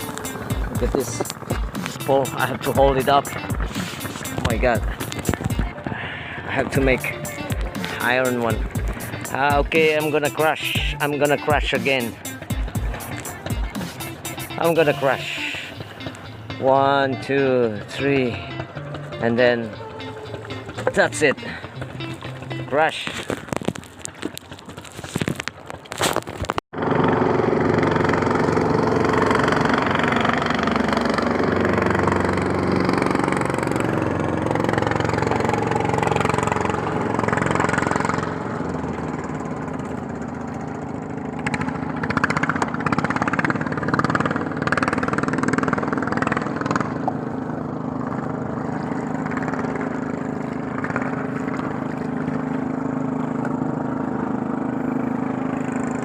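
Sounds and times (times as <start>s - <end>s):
small engine running: 0.0s - 56.0s
crackling noise: 21.7s - 26.6s.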